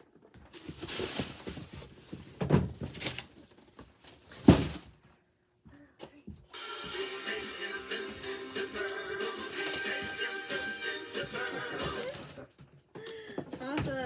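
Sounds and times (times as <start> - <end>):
toy packaging rustling: 0.4 - 4.9, 8.1 - 14.0.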